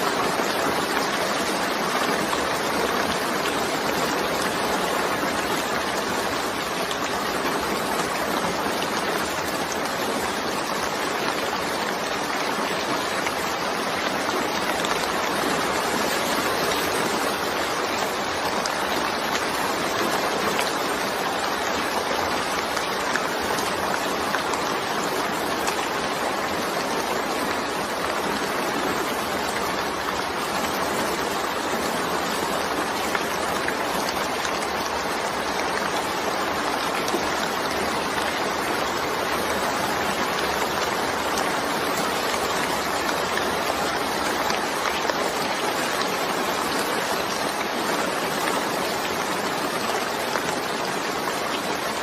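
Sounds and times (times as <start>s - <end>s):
steady rain falling: 0.0s - 52.0s.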